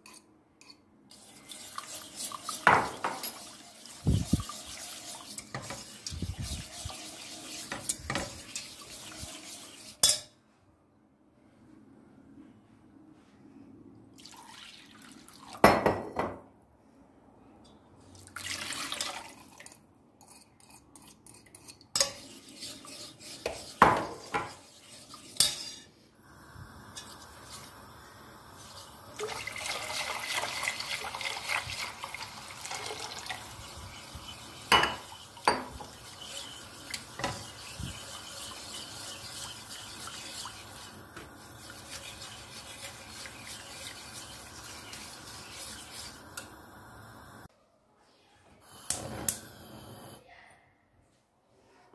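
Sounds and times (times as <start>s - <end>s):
running tap water: 1.2s - 9.9s, 26.8s - 47.5s
dishes and cutlery clinking: 2.6s - 3.6s, 25.3s - 26.0s, 33.9s - 37.6s.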